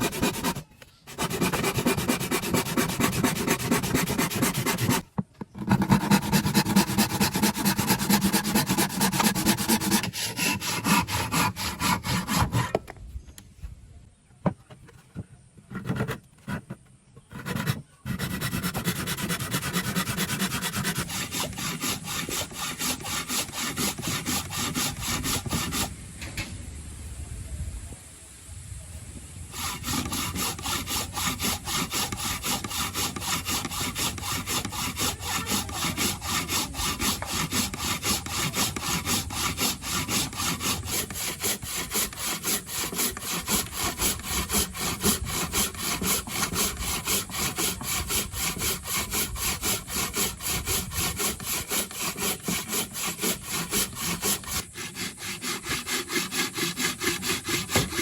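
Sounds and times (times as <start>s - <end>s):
hand tool stroking wood: 0.0s - 12.8s, 14.8s - 25.9s, 29.5s - 58.0s.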